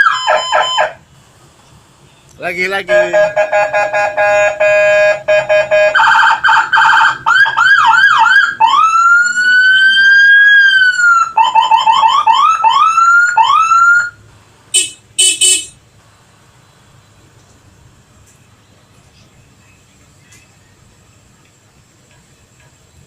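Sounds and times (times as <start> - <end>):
electronic siren wailing and yelping: 0.0 - 1.0, 3.0 - 14.2
short siren blasts: 0.0 - 1.0, 2.9 - 14.2, 14.8 - 15.8.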